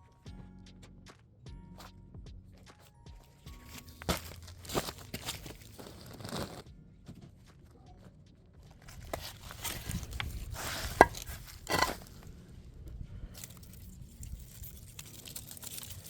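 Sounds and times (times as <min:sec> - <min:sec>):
plastic bag rustling and tearing: 0:03.6 - 0:06.6, 0:08.9 - 0:12.2, 0:13.4 - 0:16.0.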